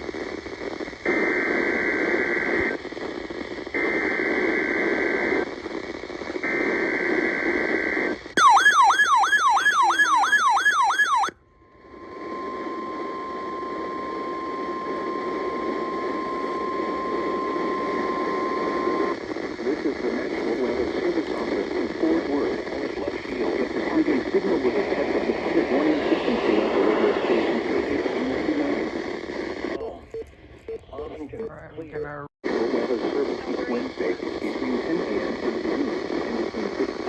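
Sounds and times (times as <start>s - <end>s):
radio static: 0.0s - 37.0s
warbling alert siren: 8.4s - 11.4s
steady warning alarm tone: 8.4s - 19.1s
data bursts: 12.5s - 32.2s.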